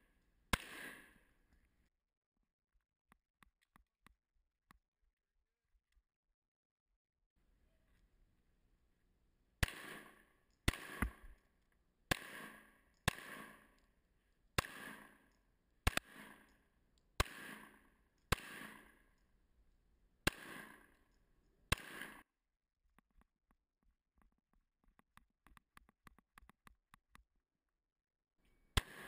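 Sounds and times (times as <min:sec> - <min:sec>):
pistol shots with echo: 0:00.5 - 0:01.3, 0:09.6 - 0:11.4, 0:12.1 - 0:13.8, 0:14.6 - 0:19.2, 0:20.2 - 0:21.1, 0:21.7 - 0:22.2, 0:28.8 - 0:29.0.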